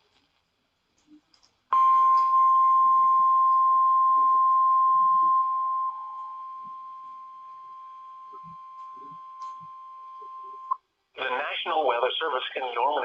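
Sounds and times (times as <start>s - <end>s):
steady warning alarm tone: 1.8s - 10.8s.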